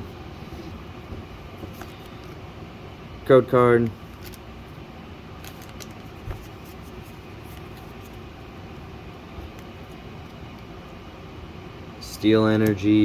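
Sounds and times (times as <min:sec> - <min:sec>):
steady background hiss: 0:00.0 - 0:13.0
trading cards handled: 0:01.6 - 0:02.4, 0:04.1 - 0:04.4, 0:05.4 - 0:08.3.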